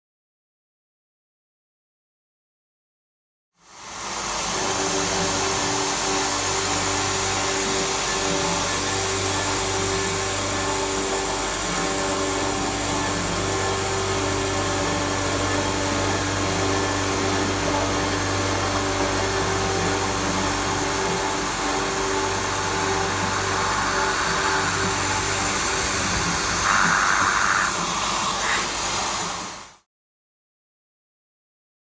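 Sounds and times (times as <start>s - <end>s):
circular saw cutting steel: 4.6s - 29.8s.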